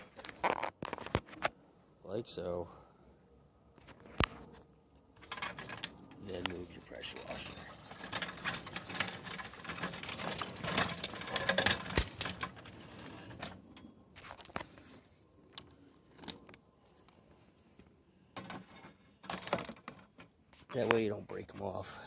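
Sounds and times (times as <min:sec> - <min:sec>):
pressure washer rattling on wheels: 0:07.3 - 0:13.4.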